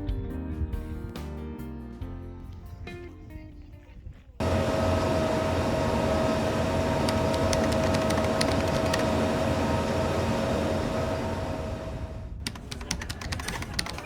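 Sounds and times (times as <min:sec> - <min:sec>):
motor-driven whir with whine: 0:04.4 - 0:12.4.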